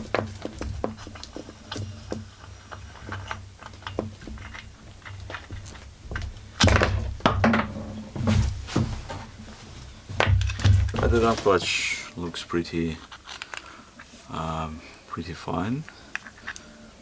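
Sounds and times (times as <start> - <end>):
metal parts thunking: 3.0 - 9.4, 10.1 - 11.9.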